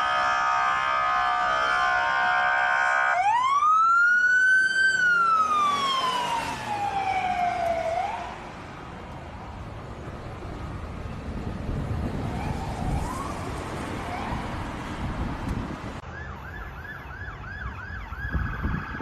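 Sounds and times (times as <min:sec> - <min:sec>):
police siren wailing: 0:00.0 - 0:08.6, 0:12.0 - 0:15.0, 0:16.0 - 0:19.0.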